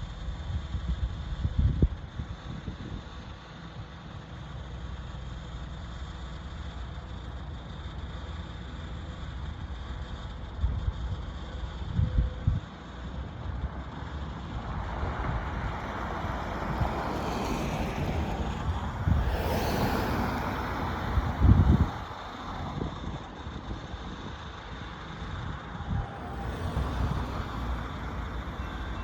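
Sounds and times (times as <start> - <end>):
vehicle passing by: 13.7 - 29.0
wind buffeting microphone: 14.2 - 29.0.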